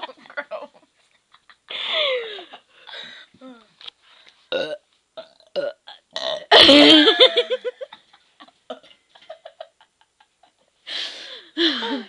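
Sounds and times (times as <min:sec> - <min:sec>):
girl burping: 0:04.5 - 0:07.0.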